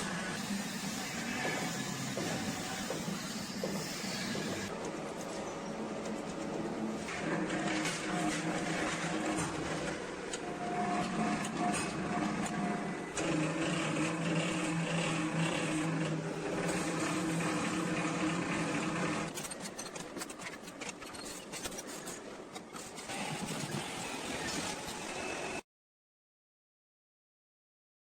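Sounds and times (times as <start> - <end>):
electric motor hum: 7.1 - 19.3.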